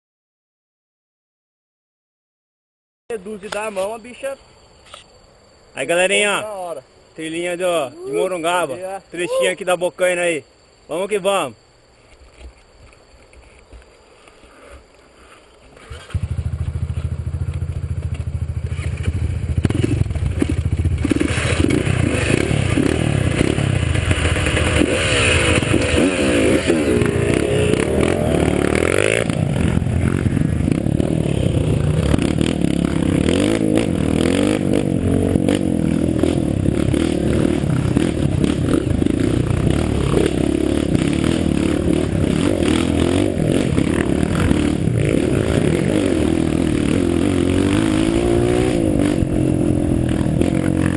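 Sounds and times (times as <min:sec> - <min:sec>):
clatter and scraping from terrain: 0:12.0 - 0:34.6
off-road vehicle engine revving: 0:18.6 - 0:50.9.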